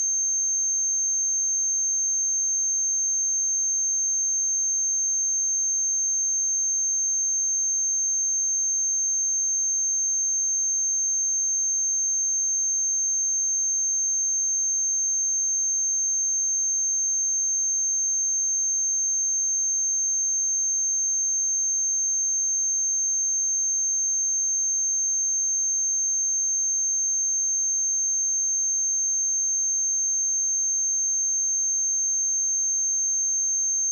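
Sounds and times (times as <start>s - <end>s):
high-pitched sine wave tone: 12.2s - 33.9s.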